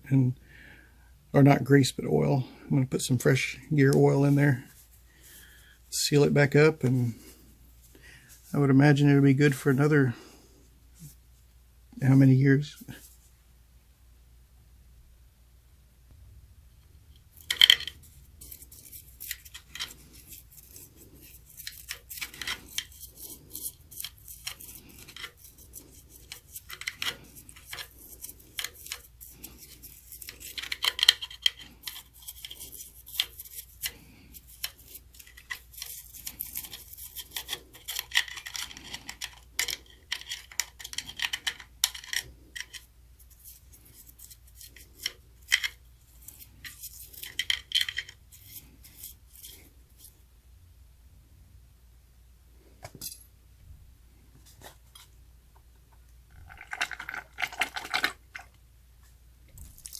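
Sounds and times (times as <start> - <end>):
metal scraping and clinking: 17.3 - 50.2, 56.3 - 58.6.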